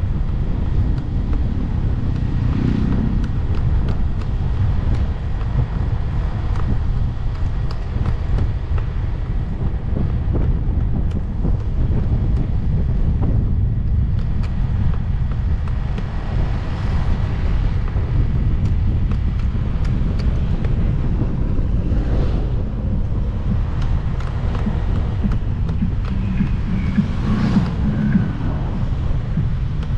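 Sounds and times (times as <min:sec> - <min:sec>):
motorcycle engine drone: 0:00.0 - 0:29.9
road noise: 0:00.0 - 0:29.9
wind rumbling on microphone: 0:00.0 - 0:29.9.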